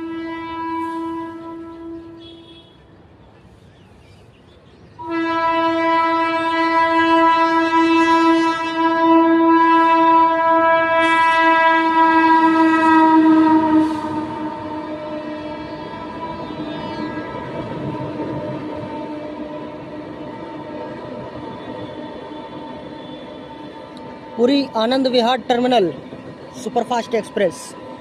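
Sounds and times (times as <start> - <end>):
locomotive horn blast: 0.0 - 3.0, 5.0 - 24.4
passing coaches rumbling and clattering: 4.5 - 28.0.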